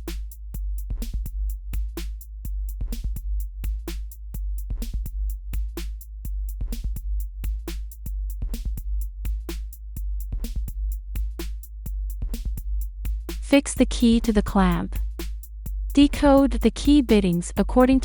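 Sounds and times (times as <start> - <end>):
electronic music with drum-machine beat: 8.5 - 18.0.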